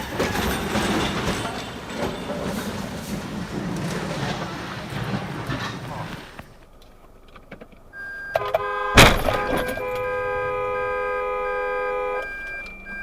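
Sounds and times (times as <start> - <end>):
multi-note horn blaring: 8.3 - 13.0
loud crash: 9.0 - 10.0.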